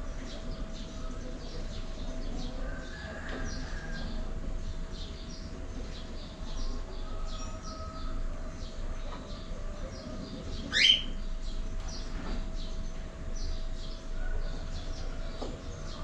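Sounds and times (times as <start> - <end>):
cockatiels chirping: 10.7 - 11.2.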